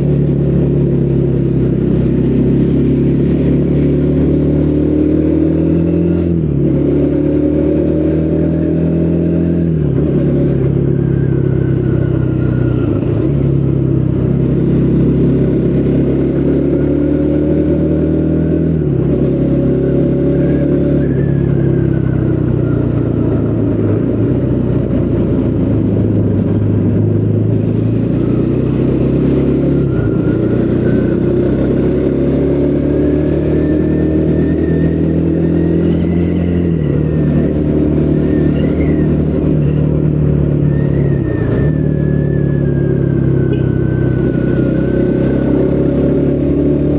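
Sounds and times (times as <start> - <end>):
motorcycle engine shifting through gears: 0.0 - 46.9.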